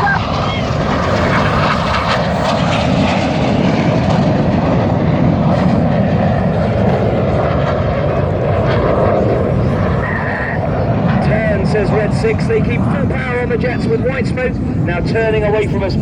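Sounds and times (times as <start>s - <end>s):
jet engines roaring: 0.0s - 16.0s.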